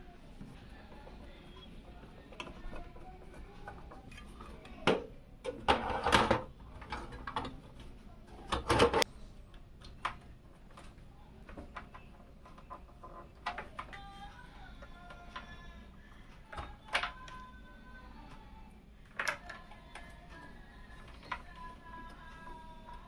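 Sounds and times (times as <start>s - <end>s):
plastic and metal parts clattering: 1.0s - 9.1s, 19.1s - 23.0s.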